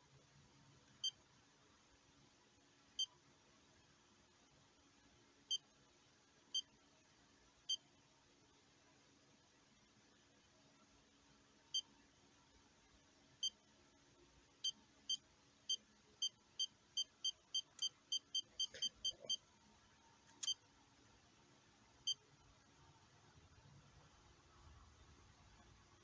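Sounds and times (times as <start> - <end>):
battery charger beeps: 16.2 - 19.4, 20.4 - 20.6.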